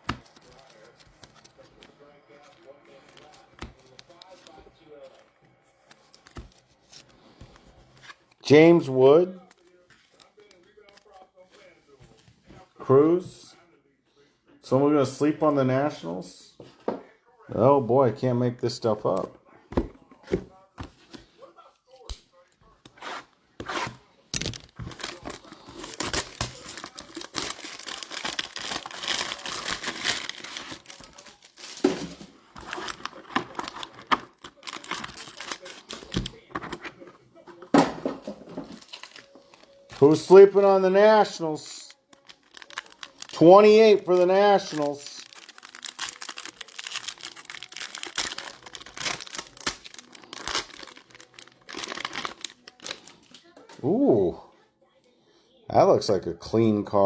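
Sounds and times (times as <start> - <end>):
foil wrapper tearing and crinkling: 23.0 - 36.6, 38.6 - 53.5.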